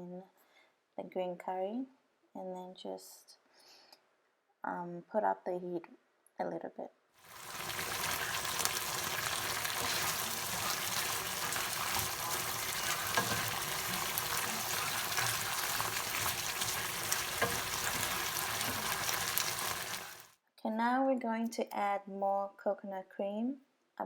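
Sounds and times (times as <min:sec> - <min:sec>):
chicken sizzling in a pan: 0:07.2 - 0:20.4
utensil scraping a pan: 0:07.3 - 0:20.3.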